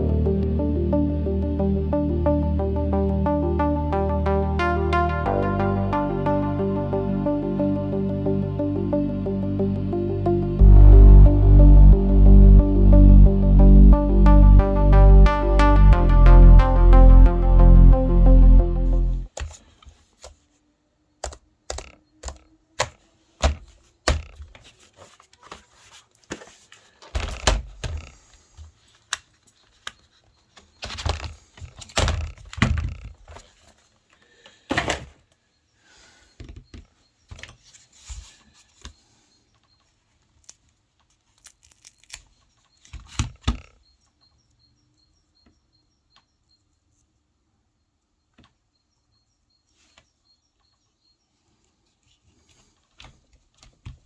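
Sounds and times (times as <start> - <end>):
laptop parts clicking and knocking: 19.3 - 20.4, 21.2 - 25.6, 26.2 - 33.6, 40.4 - 44.3.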